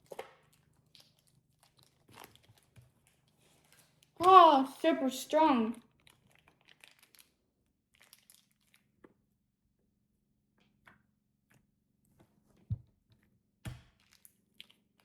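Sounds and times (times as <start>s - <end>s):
slime packaging crackling: 0.0s - 7.4s, 8.0s - 8.9s.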